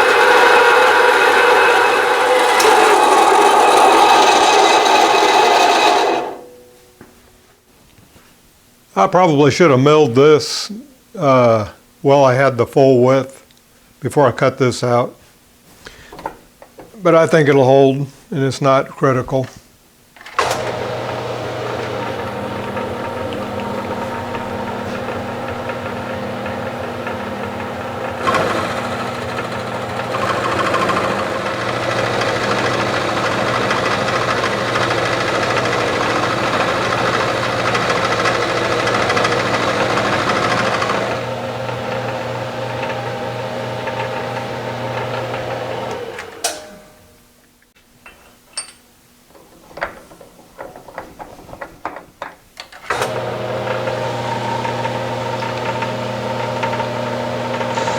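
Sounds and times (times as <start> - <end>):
harsh steel cutting noise: 0.0 - 6.5, 20.4 - 46.6, 52.9 - 57.9
milling machine motor humming: 0.0 - 6.5, 20.3 - 46.4, 52.9 - 57.9.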